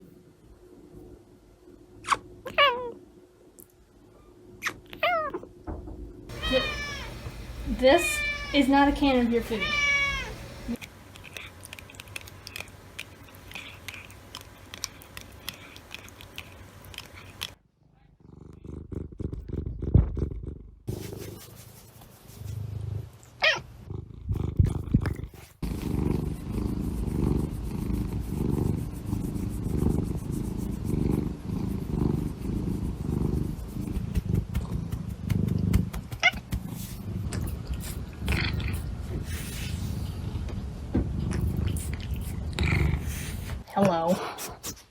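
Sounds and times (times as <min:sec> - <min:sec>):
knocks: 0:05.6 - 0:06.3
cat purring: 0:05.6 - 0:44.5.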